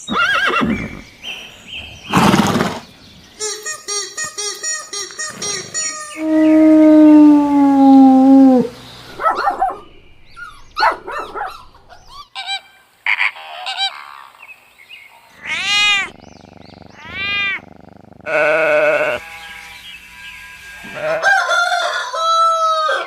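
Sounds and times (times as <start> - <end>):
animal calls: 3.4 - 14.4, 15.1 - 19.6.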